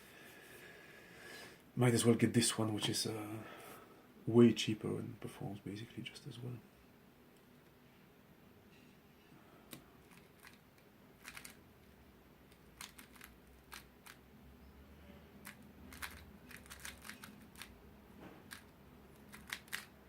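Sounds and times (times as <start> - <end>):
speed cube clicking: 10.0 - 10.6, 11.2 - 11.6, 12.5 - 14.2, 15.4 - 17.8, 18.5 - 20.0.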